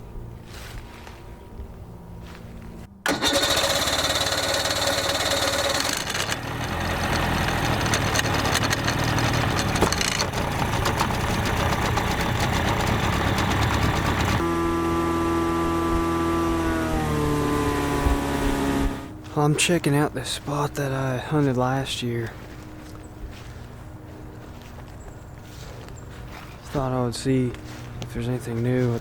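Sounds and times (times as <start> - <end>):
outboard motor running: 3.0 - 19.2.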